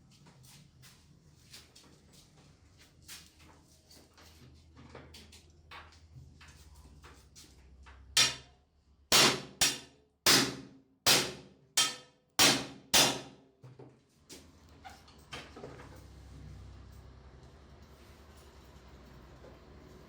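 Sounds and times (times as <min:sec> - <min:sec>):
hammer blows on metal: 0:09.1 - 0:13.4.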